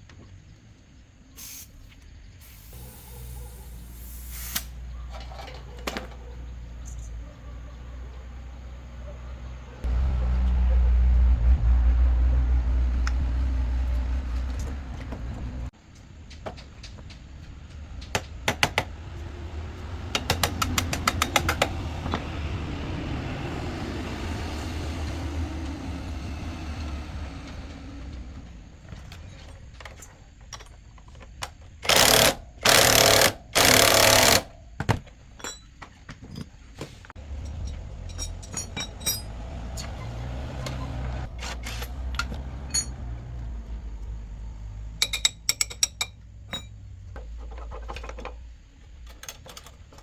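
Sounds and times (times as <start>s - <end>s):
loud hissing bursts: 1.4s - 4.8s.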